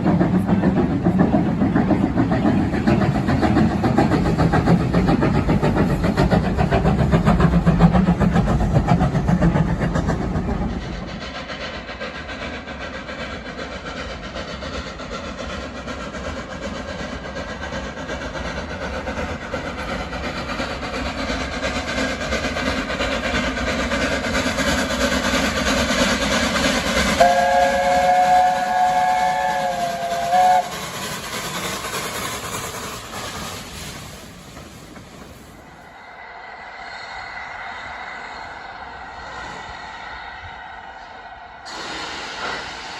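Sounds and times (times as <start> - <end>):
steam train rumbling: 0.0 - 42.9
steam whistle: 27.2 - 30.8.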